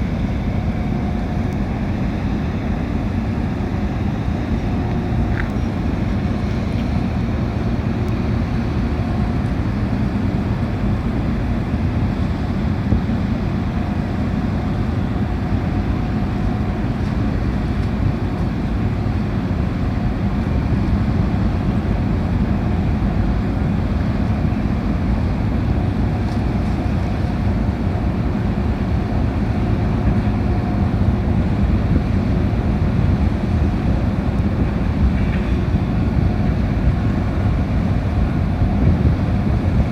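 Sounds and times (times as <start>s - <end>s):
ship engines droning: 0.0s - 39.9s
wind on microphone: 0.0s - 39.9s.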